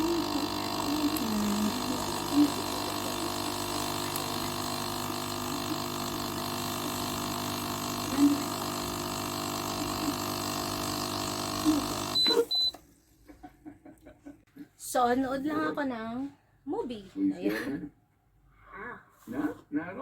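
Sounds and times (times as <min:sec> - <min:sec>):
coffee machine pump running: 0:00.0 - 0:12.7.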